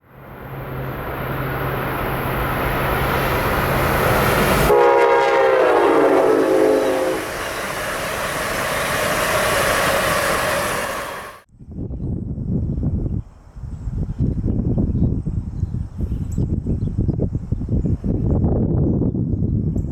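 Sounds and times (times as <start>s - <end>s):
high-speed train rushing past: 0.0s - 11.5s
gusty rumbling: 0.2s - 19.7s
train horn chord: 4.2s - 8.9s.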